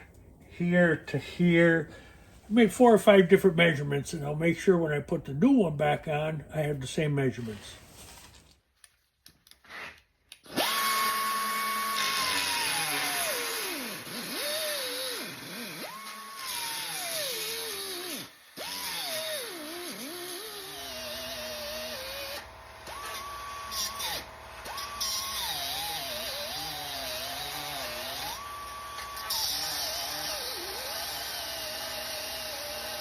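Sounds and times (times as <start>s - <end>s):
power tool motor whining: 10.3s - 33.0s.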